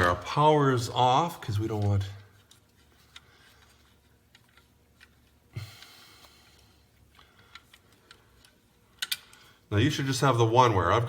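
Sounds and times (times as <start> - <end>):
wrench clicks and taps: 7.2 - 9.4.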